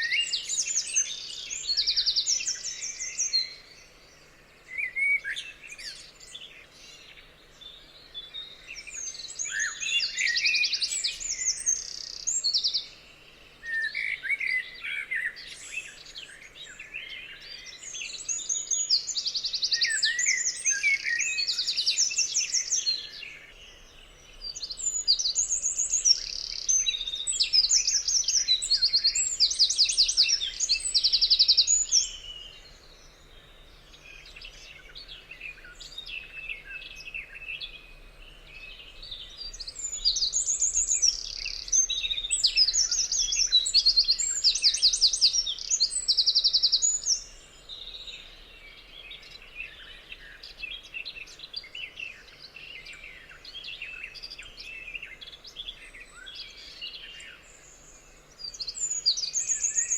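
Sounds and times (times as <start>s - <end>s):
faint bird chirps and whistles: 0.0s - 59.9s
bird trilled rattling song: 39.3s - 47.4s.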